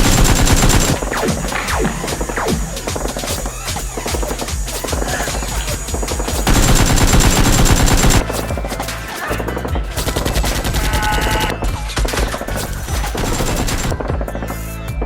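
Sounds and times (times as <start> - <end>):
machine-gun fire bursts: 0.0 - 8.9, 12.1 - 14.0
background music: 0.0 - 15.0.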